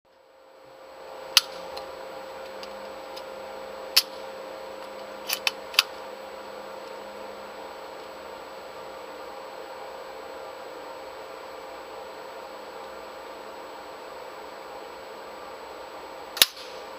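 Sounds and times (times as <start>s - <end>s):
electrical hum with held tone: 0.1s - 16.9s
sharp mechanical clicks: 16.4s - 16.8s.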